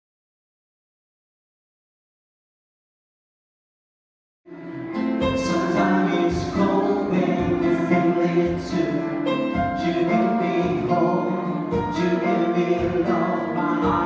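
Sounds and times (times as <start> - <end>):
live pop band music: 4.6 - 14.0.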